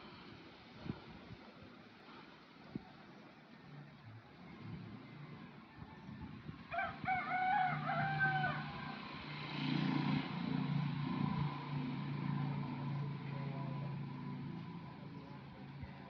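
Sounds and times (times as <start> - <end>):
rooster crowing: 6.0 - 9.0.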